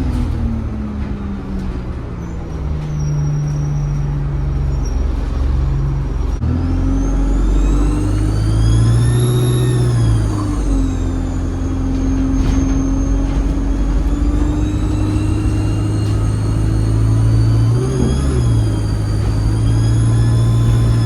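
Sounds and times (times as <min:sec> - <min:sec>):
bus engine accelerating: 0:00.0 - 0:21.0
high turbo whistle: 0:06.7 - 0:13.1, 0:14.1 - 0:21.0.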